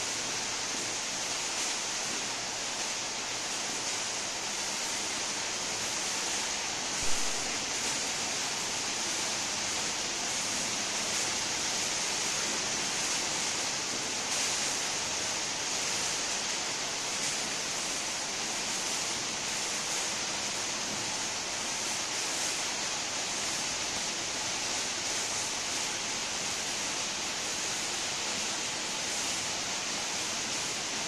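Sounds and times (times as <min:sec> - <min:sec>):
waterfall effect machine hissing: 0:00.0 - 0:31.0.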